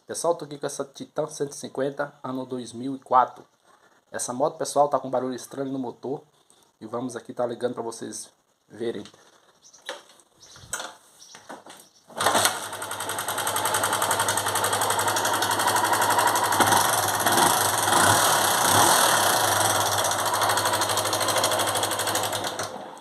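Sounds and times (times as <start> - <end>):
motorcycle engine starting and running: 12.1 - 23.0.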